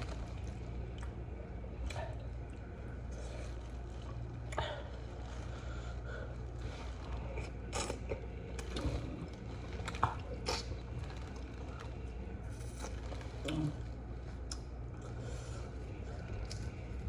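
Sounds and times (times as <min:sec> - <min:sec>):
chewing: 0:00.0 - 0:17.0
steady low hum: 0:00.0 - 0:17.0.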